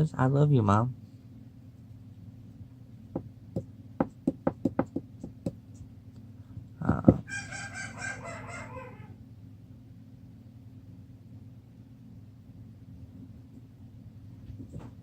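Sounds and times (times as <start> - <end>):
rooster crowing: 7.3 - 9.2.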